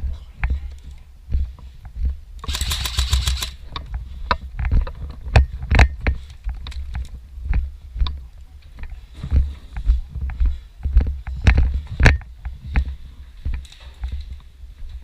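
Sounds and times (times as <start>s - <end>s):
airsoft gun rapid fire: 2.4s - 3.6s.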